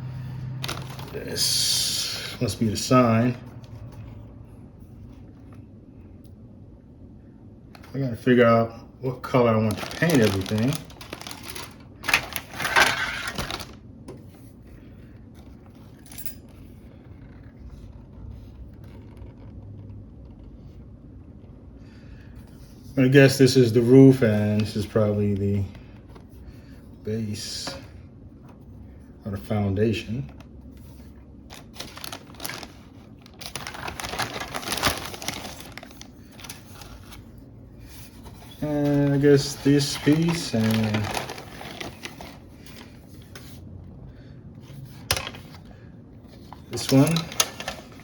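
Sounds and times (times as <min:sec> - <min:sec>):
faint clicks and handling noise: 0:00.5 - 0:01.5, 0:07.7 - 0:08.0, 0:09.2 - 0:21.5, 0:24.1 - 0:26.4, 0:30.1 - 0:43.6, 0:44.6 - 0:48.0
plastic parts clattering: 0:00.6 - 0:01.4, 0:09.4 - 0:13.8, 0:31.5 - 0:37.1, 0:38.5 - 0:42.9, 0:45.0 - 0:45.6, 0:46.6 - 0:48.0.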